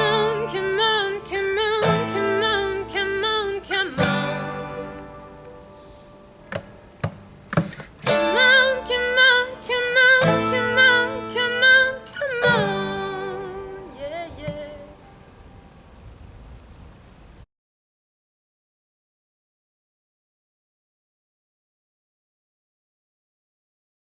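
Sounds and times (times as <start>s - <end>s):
person singing with vibrato: 0.0s - 5.2s, 8.0s - 15.1s
acoustic guitar strums: 0.0s - 15.2s.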